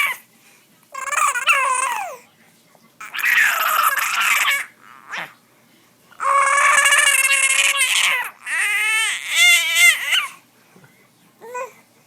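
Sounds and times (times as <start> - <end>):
baby squealing: 1.0 - 2.2, 3.0 - 5.3, 6.2 - 10.4.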